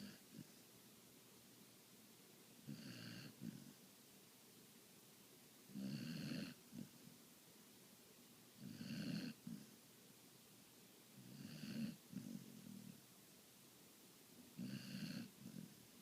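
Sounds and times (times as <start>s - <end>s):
pet snoring: 0.0s - 0.6s, 2.6s - 3.8s, 5.7s - 7.0s, 8.6s - 9.7s, 11.2s - 13.0s, 14.6s - 15.8s.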